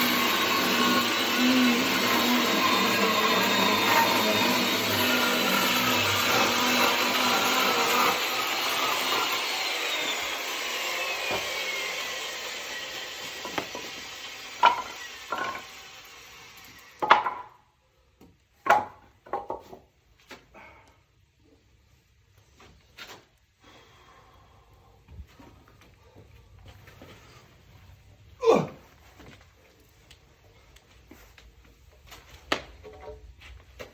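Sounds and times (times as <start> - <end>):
electric chainsaw winding down: 0.0 - 17.0
sharp wooden knocks: 17.0 - 17.6, 18.6 - 19.8.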